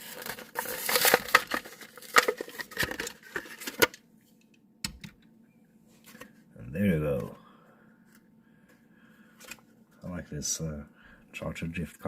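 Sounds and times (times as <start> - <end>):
plastic packaging crackling: 0.0 - 4.0.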